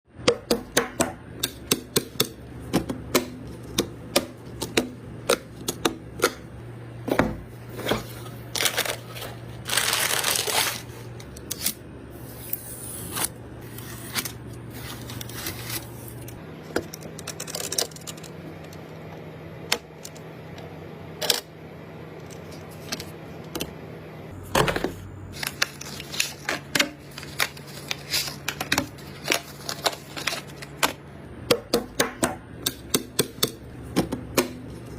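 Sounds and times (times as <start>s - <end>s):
clicks and taps of hard objects: 0.2s - 6.4s.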